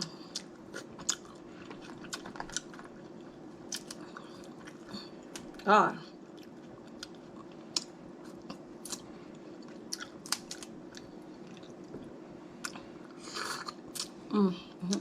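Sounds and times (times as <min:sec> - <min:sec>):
faint steady hum: 0:00.0 - 0:15.0
person chewing crab legs: 0:00.1 - 0:05.6, 0:06.2 - 0:12.0.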